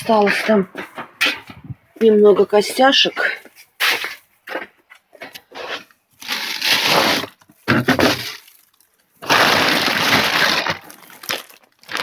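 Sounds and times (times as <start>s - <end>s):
plastic bag rustling: 5.6s - 12.0s.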